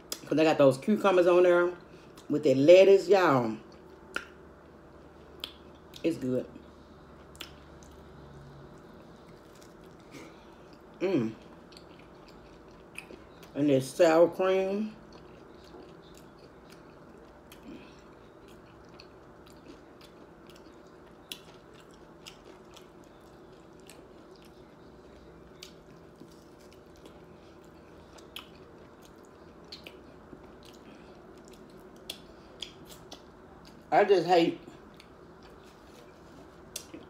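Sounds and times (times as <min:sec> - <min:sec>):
chewing mouth sounds: 0:08.7 - 0:13.5, 0:15.0 - 0:33.8.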